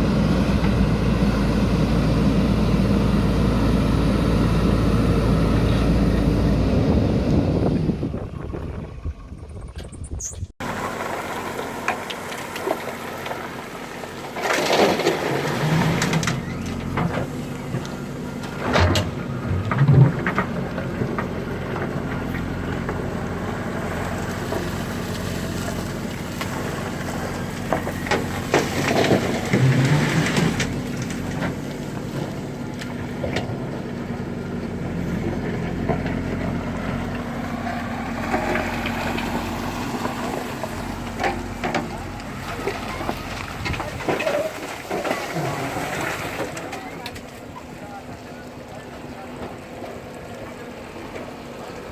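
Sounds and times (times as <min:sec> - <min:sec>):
diesel engine running: 0:00.0 - 0:09.8, 0:10.5 - 0:51.9
stone and gravel clattering: 0:38.2 - 0:46.8.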